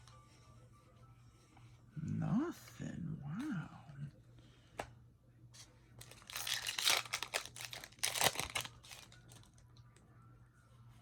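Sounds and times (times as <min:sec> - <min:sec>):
foil wrapper crinkling: 0:06.0 - 0:09.6
trading cards rustling: 0:06.0 - 0:09.6.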